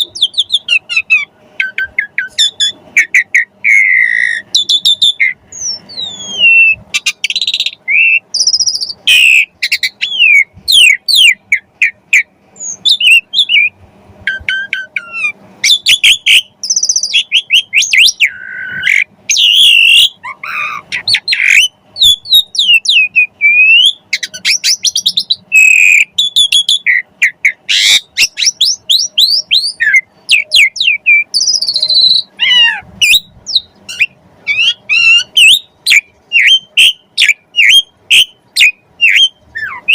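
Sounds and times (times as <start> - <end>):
starling singing: 0.0 - 39.9.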